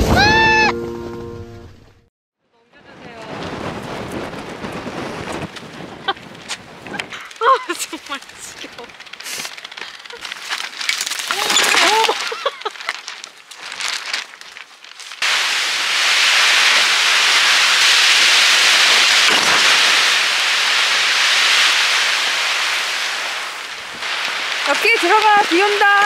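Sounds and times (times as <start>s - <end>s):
heavy rain downpour hiss: 2.9s - 10.3s, 15.2s - 26.0s
hailstones striking: 2.9s - 26.0s.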